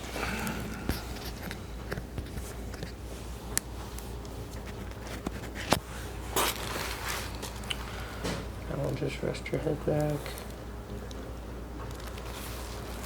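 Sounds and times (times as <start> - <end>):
rustling of clothing: 0.0 - 8.5, 11.8 - 13.0.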